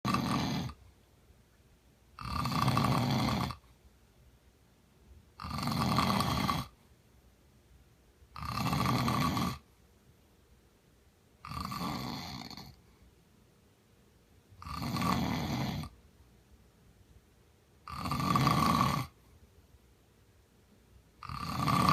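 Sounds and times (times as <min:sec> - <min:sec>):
man snoring: 0:00.0 - 0:00.8, 0:02.2 - 0:03.6, 0:05.4 - 0:06.7, 0:08.4 - 0:09.6, 0:11.5 - 0:12.8, 0:14.6 - 0:15.9, 0:17.9 - 0:19.2, 0:21.2 - 0:21.9
quiet breathing: 0:11.4 - 0:13.5, 0:17.8 - 0:19.8.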